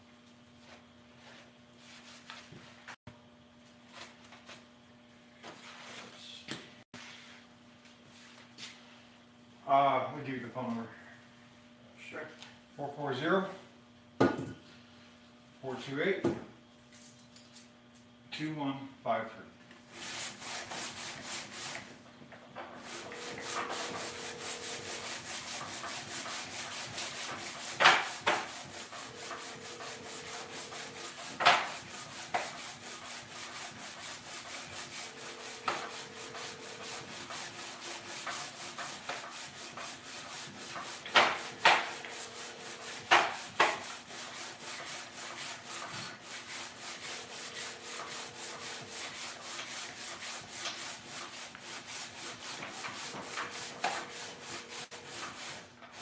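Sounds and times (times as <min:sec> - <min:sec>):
abrasive scrubbing on metal: 0:22.8 - 0:55.6.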